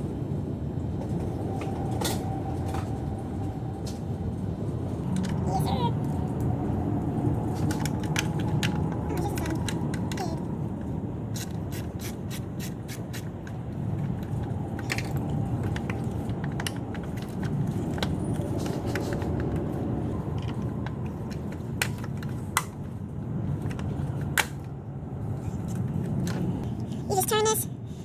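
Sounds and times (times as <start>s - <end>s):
steady low rumble: 0.0s - 28.0s
hand tools and metal parts clinking: 11.3s - 19.6s.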